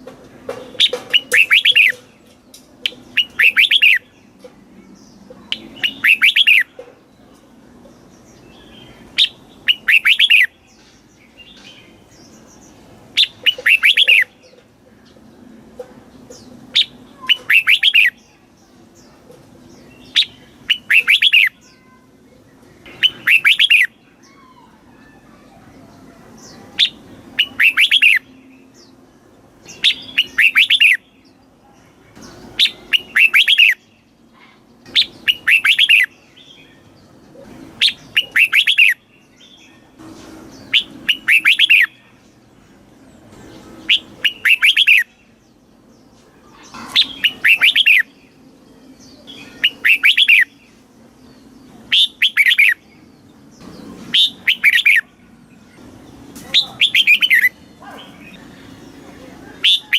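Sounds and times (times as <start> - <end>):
bird singing whistled notes: 0.8 - 2.0, 3.1 - 4.1, 5.5 - 6.7, 8.6 - 10.6, 13.2 - 14.3, 16.8 - 18.2, 20.0 - 21.9, 22.8 - 24.4, 26.8 - 28.7, 29.7 - 31.0, 32.6 - 33.9, 34.9 - 36.8, 37.8 - 39.8, 40.6 - 42.1, 43.9 - 45.2, 47.0 - 50.8, 51.9 - 52.9, 54.1 - 55.1, 56.6 - 58.3.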